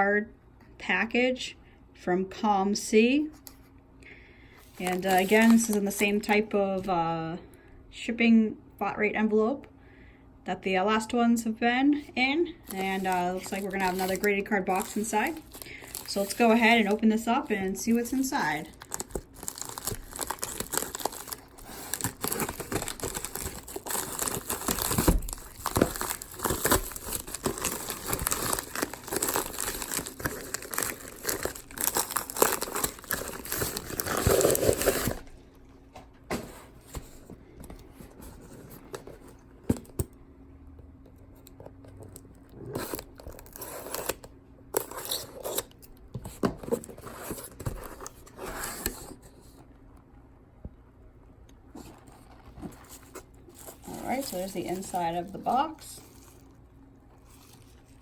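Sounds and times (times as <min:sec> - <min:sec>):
packaging crinkling and rustling: 0:04.6 - 0:06.3, 0:12.6 - 0:35.6, 0:41.7 - 0:49.3, 0:51.7 - 0:58.0
envelope tearing: 0:12.7 - 0:17.0, 0:17.9 - 0:35.3, 0:42.7 - 0:45.7.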